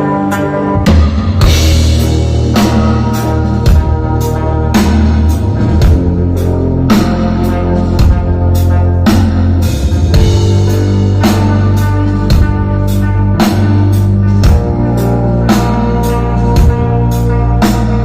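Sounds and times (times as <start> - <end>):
drum kit beat: 0.0 - 18.0
electric guitar: 0.0 - 18.0
low bass notes: 0.0 - 18.0.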